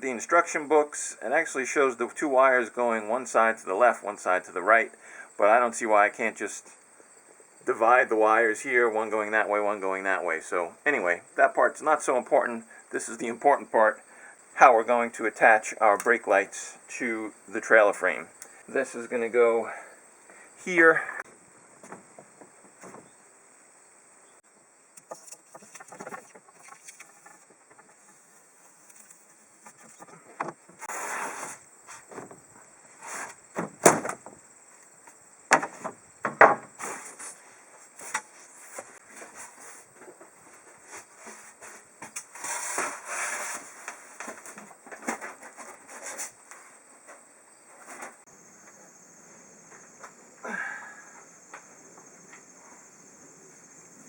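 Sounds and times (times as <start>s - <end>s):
scraping and rustling: 25.0s - 34.4s, 36.7s - 48.2s.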